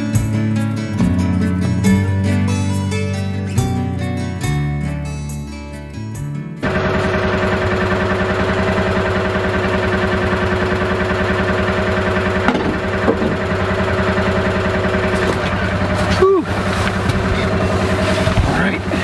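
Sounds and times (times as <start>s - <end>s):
vehicle engine idling: 6.6s - 19.0s
short knocks: 12.4s - 13.4s.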